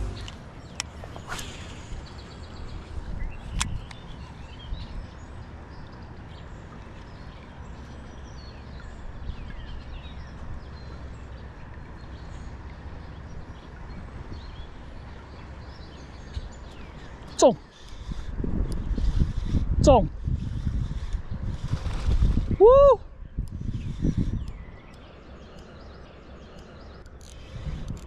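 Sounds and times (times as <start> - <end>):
steady low rumble: 0.0 - 5.7
birds chirping and whistling: 15.7 - 27.8.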